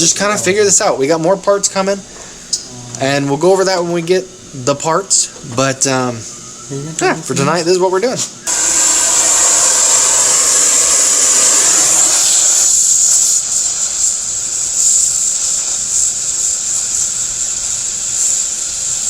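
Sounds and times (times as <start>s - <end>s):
hiss of rushing air: 8.2s - 19.0s.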